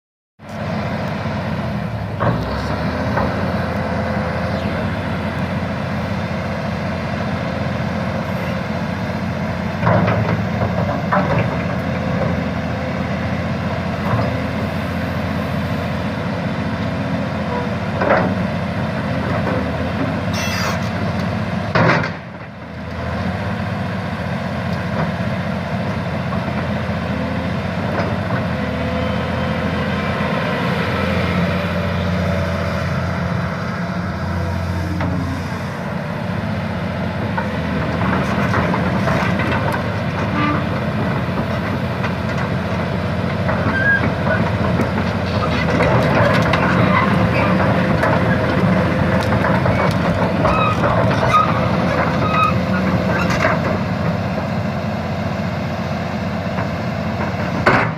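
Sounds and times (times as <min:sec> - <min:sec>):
excavator diesel engine running: 0:00.4 - 0:57.9
sharp knocks and clanks: 0:56.6 - 0:57.9.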